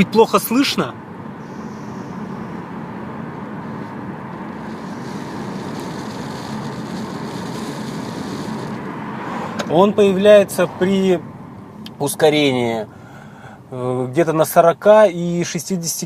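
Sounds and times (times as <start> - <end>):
road noise inside car: 0.0 - 16.0
car engine accelerating: 1.1 - 12.0.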